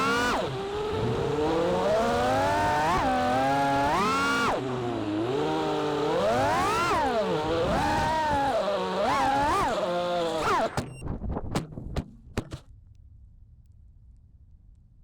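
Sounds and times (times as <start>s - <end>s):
quadcopter motors whining: 0.0s - 10.8s.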